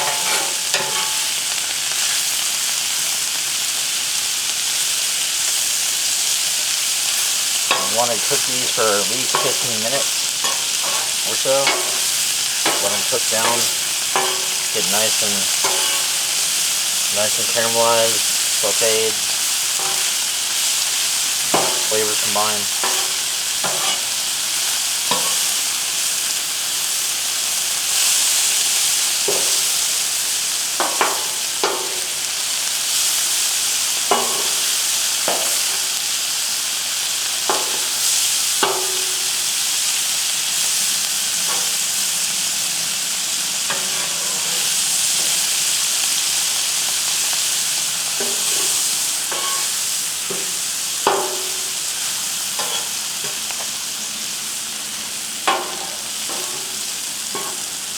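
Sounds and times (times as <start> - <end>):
spatula scraping and tapping griddle: 0.0 - 2.1, 7.1 - 25.7, 27.9 - 30.0, 30.8 - 32.4, 33.9 - 36.0, 37.4 - 39.4, 41.3 - 42.0, 43.6 - 53.8, 55.5 - 57.8
vegetables sizzling on a griddle: 0.0 - 57.9.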